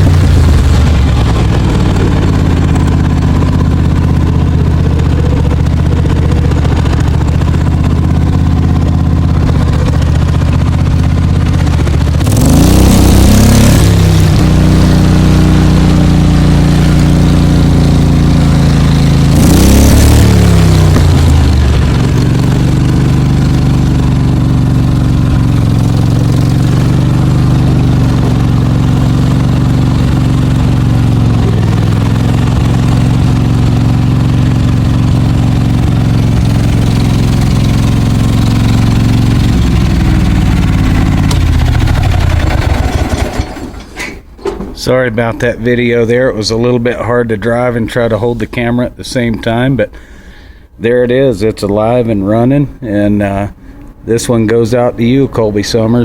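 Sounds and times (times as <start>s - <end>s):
v-twin engine running: 0.0s - 44.0s.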